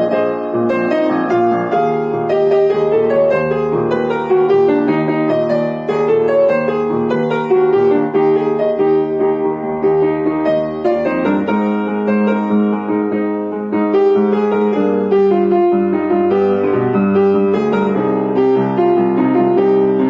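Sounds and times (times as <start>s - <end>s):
solo piano pop song: 0.0s - 20.0s.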